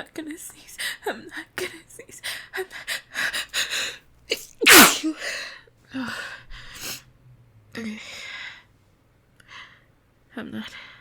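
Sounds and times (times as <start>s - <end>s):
woman sneezing: 4.3s - 5.2s.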